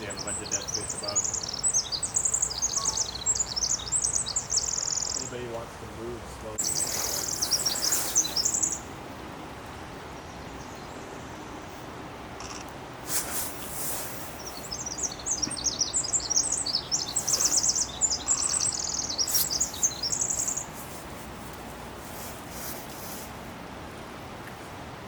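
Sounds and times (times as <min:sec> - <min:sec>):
songbird singing trills: 0:00.0 - 0:05.5, 0:06.6 - 0:08.9, 0:13.6 - 0:20.8
faint outdoor background noise: 0:00.0 - 0:25.0.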